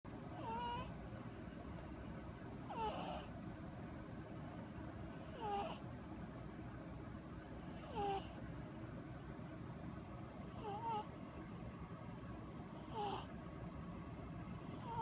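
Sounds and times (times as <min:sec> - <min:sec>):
cat snoring: 0:00.2 - 0:01.0, 0:02.6 - 0:03.4, 0:05.1 - 0:05.8, 0:07.5 - 0:08.4, 0:10.4 - 0:11.1, 0:12.7 - 0:13.3, 0:14.5 - 0:15.0.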